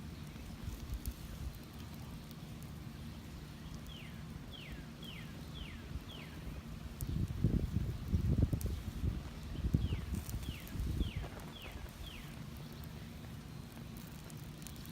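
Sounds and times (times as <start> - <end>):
wind rumbling on microphone: 5.6 - 14.0.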